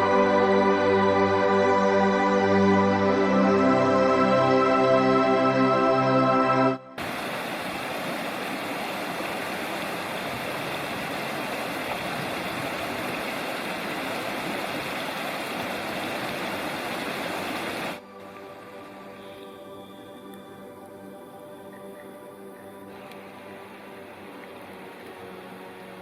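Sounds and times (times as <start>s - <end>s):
soft background music: 0.0s - 7.0s, 17.9s - 26.0s
steady rushing noise: 7.0s - 18.2s.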